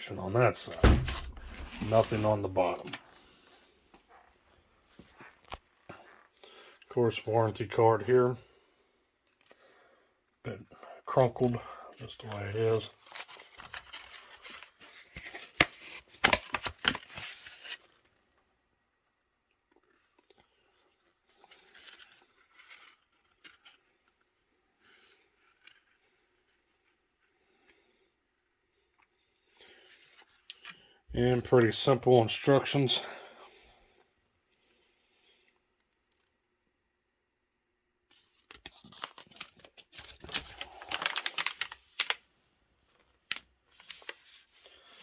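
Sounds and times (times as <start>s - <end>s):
paper rustling: 0.6s - 3.0s, 12.2s - 18.0s, 38.1s - 42.2s, 42.9s - 45.0s.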